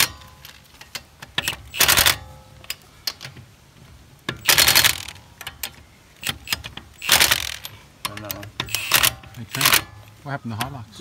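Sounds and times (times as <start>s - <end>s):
wrench rapid clicking: 1.4s - 2.2s, 4.4s - 5.2s, 6.2s - 9.9s.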